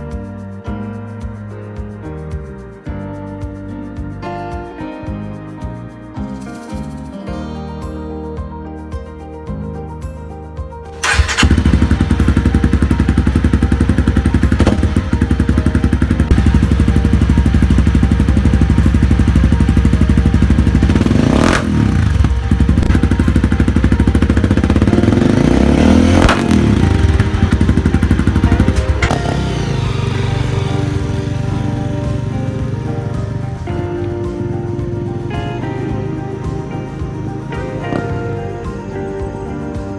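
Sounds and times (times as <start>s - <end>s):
background music: 0.0s - 39.9s
motorcycle engine idling and revving: 11.0s - 39.9s.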